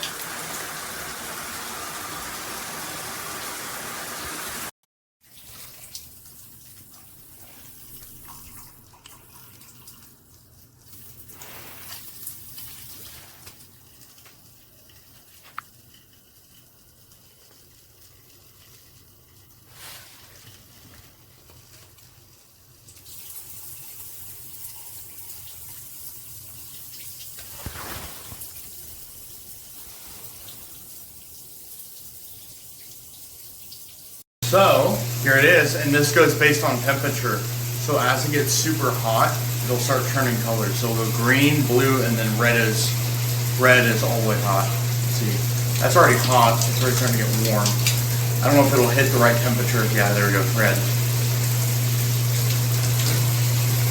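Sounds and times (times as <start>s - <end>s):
shower water spraying: 0.0s - 4.7s, 11.0s - 13.7s, 27.2s - 32.2s, 34.4s - 53.9s
water running: 0.0s - 53.9s.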